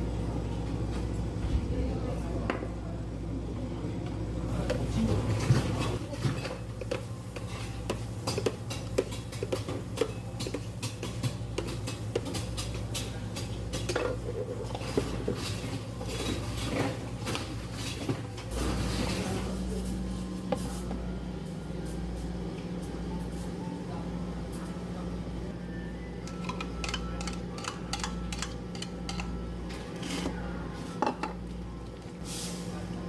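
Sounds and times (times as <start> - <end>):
low machine hum: 0.0 - 33.0
dishes and utensils clinking: 4.6 - 20.7, 26.3 - 30.3.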